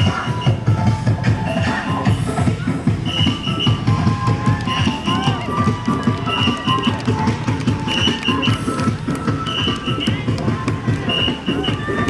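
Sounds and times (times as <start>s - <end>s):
quick steady drumbeat: 2.1s - 12.0s.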